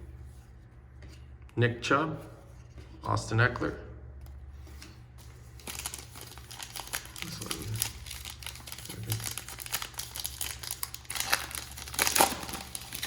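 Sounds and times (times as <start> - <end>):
foil wrapper crinkling: 5.3 - 13.0.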